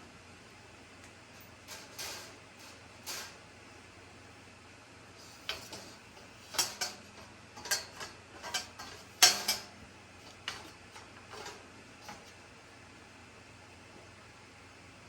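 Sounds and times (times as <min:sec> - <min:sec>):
hardware clicks and clinks: 0:06.5 - 0:09.7.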